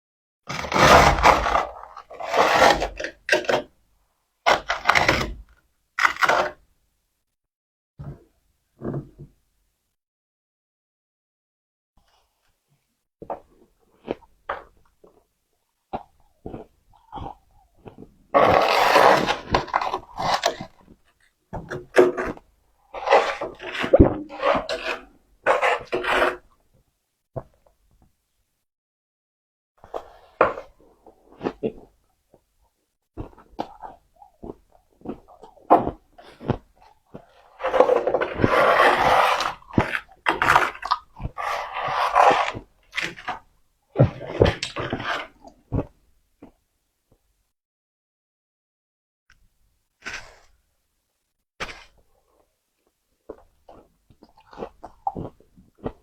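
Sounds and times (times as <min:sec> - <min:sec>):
frost crunching when chewed: 0:33.2 - 0:43.4, 0:53.3 - 0:56.0.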